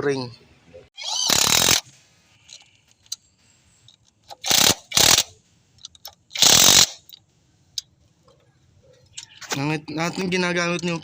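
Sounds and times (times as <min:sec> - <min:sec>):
power tool driving bolts: 0:01.0 - 0:01.9, 0:04.3 - 0:05.3, 0:05.9 - 0:07.2.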